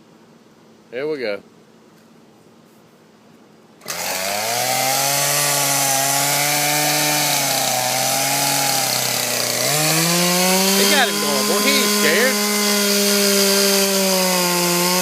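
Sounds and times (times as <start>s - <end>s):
chainsaw engine at high speed: 3.8s - 15.0s.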